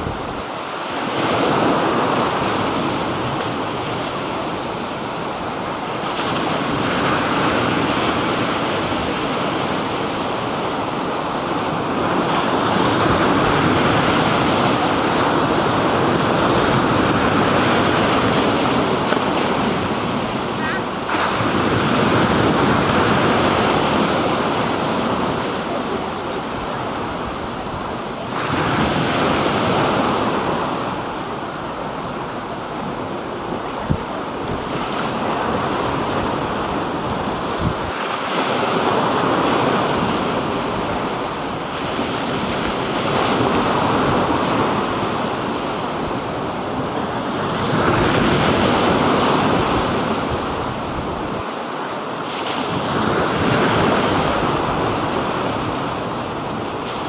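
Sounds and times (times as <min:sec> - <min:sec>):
wind buffeting microphone: 0:00.0 - 0:00.5, 0:32.9 - 0:38.0
waves breaking on shore: 0:00.0 - 0:57.0.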